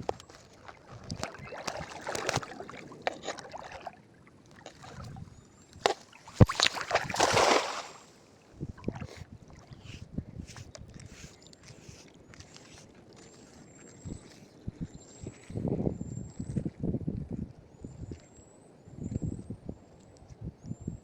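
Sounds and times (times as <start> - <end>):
water splashing: 0.0 - 10.0.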